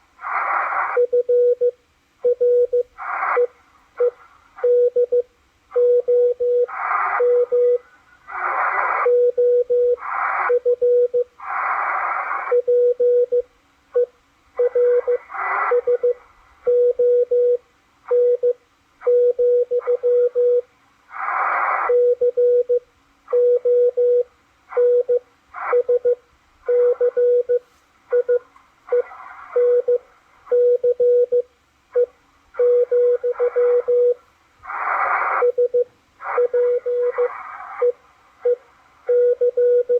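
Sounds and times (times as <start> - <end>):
hissy static: 0.0 - 39.9
morse code tone: 1.0 - 7.9, 14.0 - 20.6, 21.9 - 34.2, 35.0 - 39.9.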